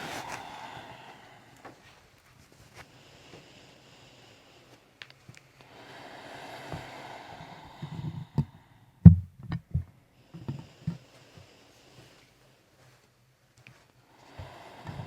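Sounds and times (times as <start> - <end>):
soft rushing sound: 0.0 - 1.9, 5.7 - 9.0.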